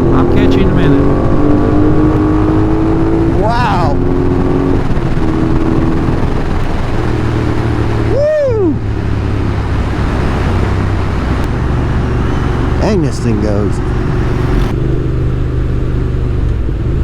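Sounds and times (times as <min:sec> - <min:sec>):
motorcycle engine running: 0:00.0 - 0:17.0
wind and road noise: 0:00.0 - 0:17.0
person whooping: 0:08.1 - 0:08.8.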